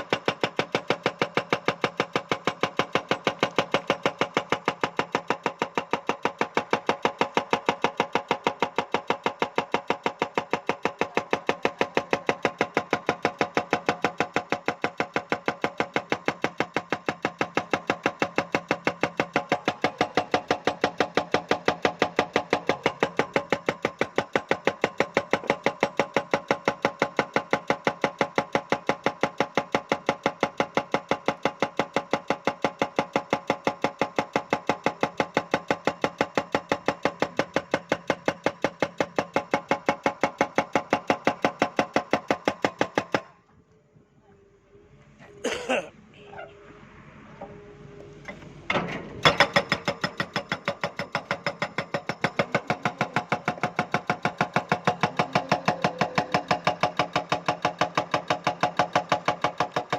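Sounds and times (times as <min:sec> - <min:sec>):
hydraulic breaker hammering rock: 0:00.0 - 0:43.4, 0:48.7 - 0:59.9
machine engine running: 0:52.4 - 0:57.5.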